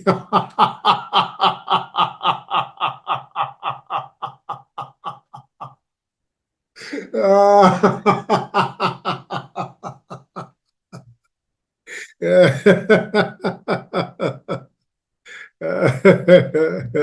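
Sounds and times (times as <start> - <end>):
rhythmic laughter: 0.0 - 5.8, 7.6 - 11.1, 11.9 - 14.6.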